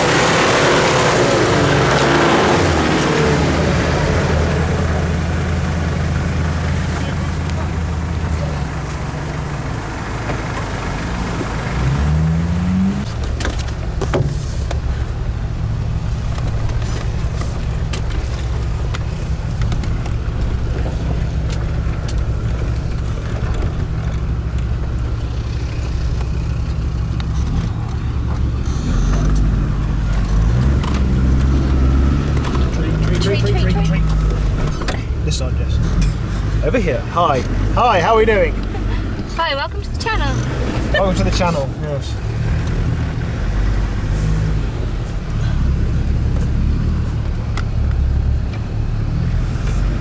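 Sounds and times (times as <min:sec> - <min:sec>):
knocks and clicks over rough ground: 0:00.0 - 0:50.0
vehicle engine running and revving: 0:00.0 - 0:50.0.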